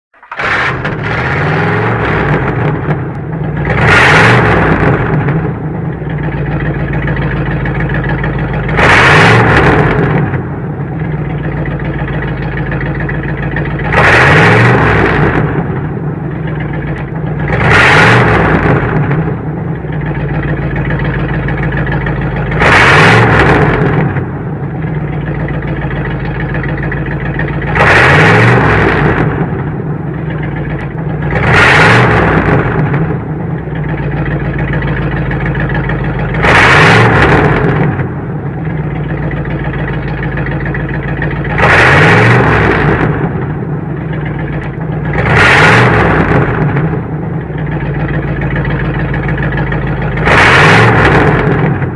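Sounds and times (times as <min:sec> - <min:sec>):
car engine idling and revving: 0:00.1 - 0:51.9.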